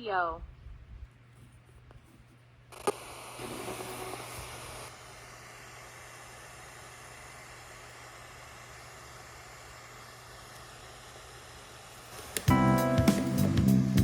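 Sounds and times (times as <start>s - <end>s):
radio static hiss: 2.7s - 13.5s.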